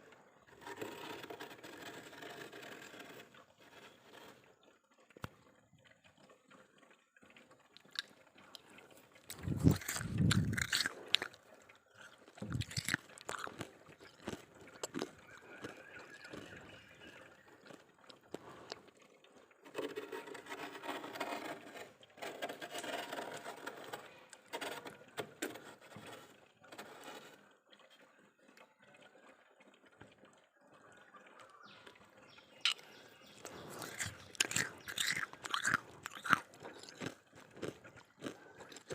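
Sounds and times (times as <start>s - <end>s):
spoon scraping frost: 9.3s - 11.4s, 12.0s - 17.0s, 32.7s - 38.9s.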